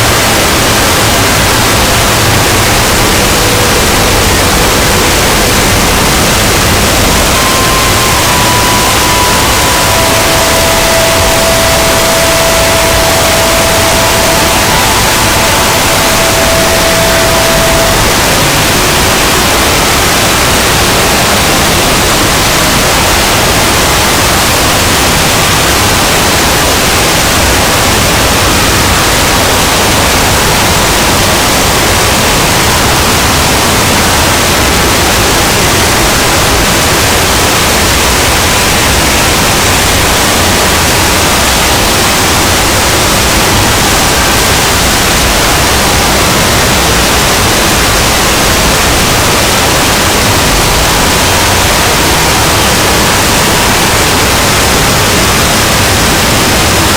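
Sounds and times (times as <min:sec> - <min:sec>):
steady tone: 0:00.0 - 0:26.4
loud static noise: 0:00.0 - 0:56.9.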